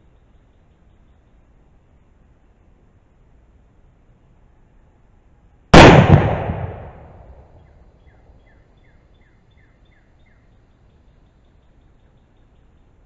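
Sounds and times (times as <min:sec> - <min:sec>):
pistol gunshot: 0:05.8 - 0:07.4.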